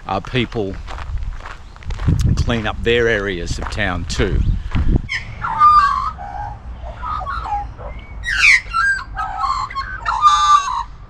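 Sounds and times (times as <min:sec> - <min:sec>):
magpies whistling calls: 0:05.1 - 0:11.0.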